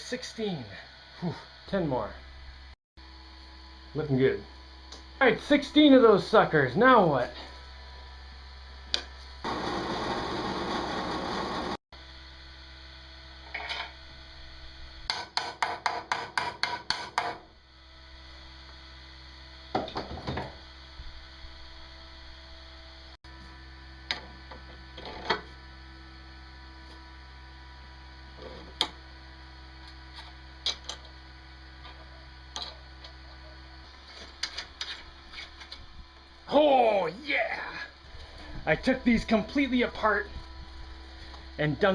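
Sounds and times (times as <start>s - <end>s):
steady low hum: 25.6s - 41.9s.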